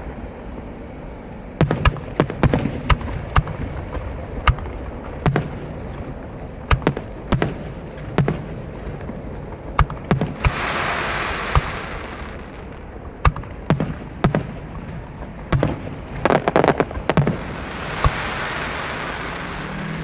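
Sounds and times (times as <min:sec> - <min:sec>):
fireworks bursting bangs: 0:01.6 - 0:19.6
loud hissing rush: 0:10.1 - 0:12.4.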